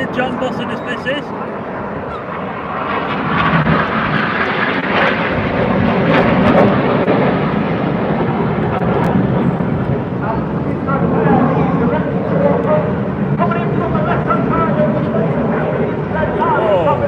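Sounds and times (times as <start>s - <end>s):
jets passing overhead: 0.0s - 17.0s.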